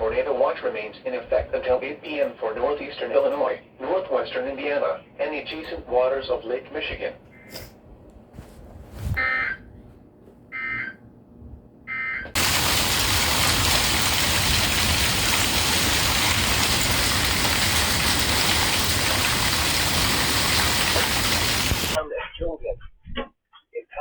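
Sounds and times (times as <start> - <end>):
short electronic tone bursts: 9.1 - 9.7
heavy rain pouring: 12.4 - 22.0.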